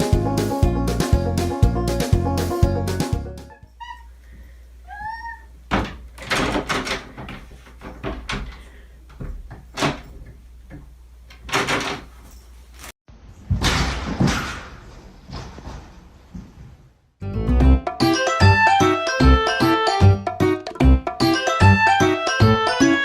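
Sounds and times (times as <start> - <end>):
sharp knocks and bangs: 13.5 - 15.7.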